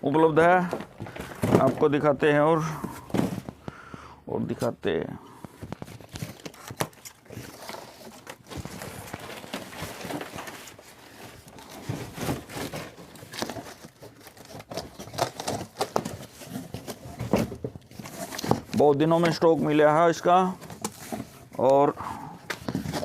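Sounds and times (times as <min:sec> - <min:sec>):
rustling of handled things: 0:00.0 - 0:23.0
clicks and knocks of handling: 0:05.4 - 0:10.8, 0:22.4 - 0:23.0.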